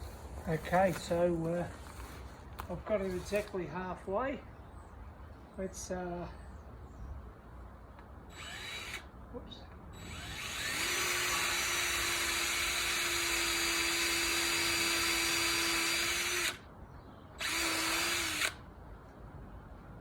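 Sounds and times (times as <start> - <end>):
power drill whining: 8.3 - 9.0, 10.0 - 16.6, 17.4 - 18.6.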